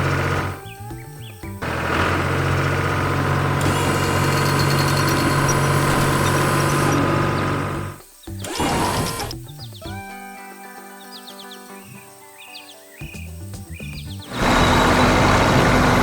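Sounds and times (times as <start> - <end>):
heavy vehicle engine running: 0.0 - 9.3, 14.3 - 16.0
thin high whine: 14.3 - 16.0.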